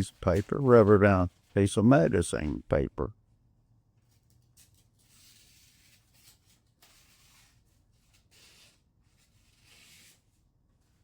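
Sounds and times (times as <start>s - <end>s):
knife slicing paper: 4.7s - 10.3s.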